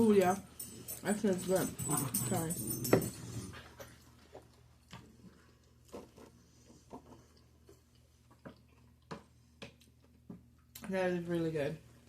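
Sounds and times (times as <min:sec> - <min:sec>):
quiet chewing: 0:03.2 - 0:10.8.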